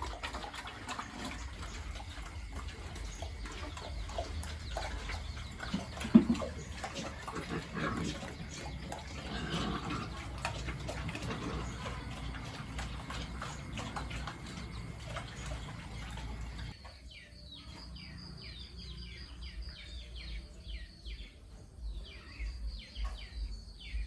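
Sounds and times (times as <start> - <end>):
pigs grunting: 0.0 - 16.8
pigs shuffling: 0.0 - 16.8.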